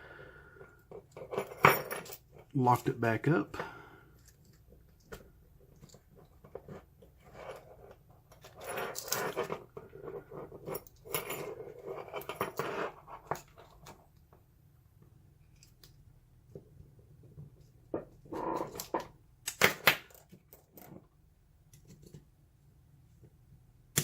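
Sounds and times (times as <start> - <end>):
metal tools clicking and scraping: 5.8 - 14.0.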